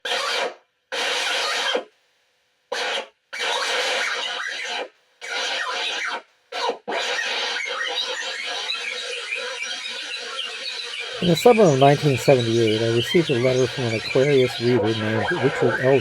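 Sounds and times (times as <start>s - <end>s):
harsh scratchy noise: 11.2s - 16.0s.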